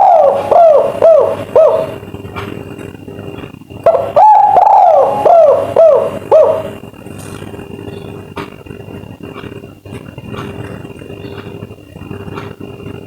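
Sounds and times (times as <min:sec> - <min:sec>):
dove cooing: 0:00.0 - 0:08.4
faint steady hum: 0:00.0 - 0:13.0.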